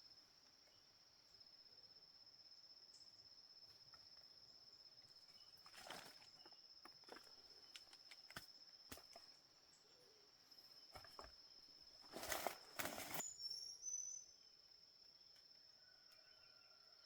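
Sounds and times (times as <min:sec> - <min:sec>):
insects trilling: 0:00.0 - 0:17.0
rustles: 0:10.9 - 0:13.3.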